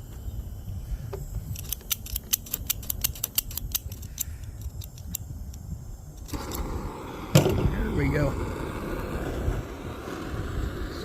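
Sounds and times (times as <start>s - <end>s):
torch igniter clicking: 0.0s - 8.2s
wind buffeting microphone: 0.0s - 11.0s.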